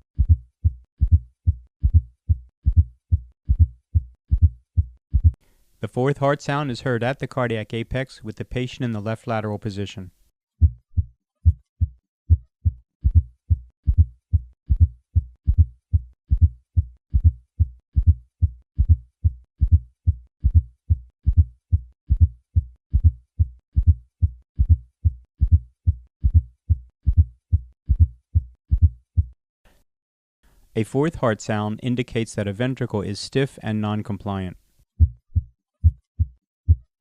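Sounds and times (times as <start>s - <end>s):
heart sounds thudding: 0.2s - 5.4s, 10.6s - 29.4s, 35.0s - 36.9s.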